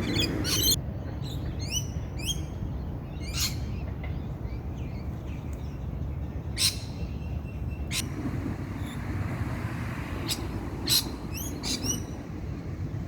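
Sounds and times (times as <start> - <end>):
sharp high bird calls: 0.0 - 0.8.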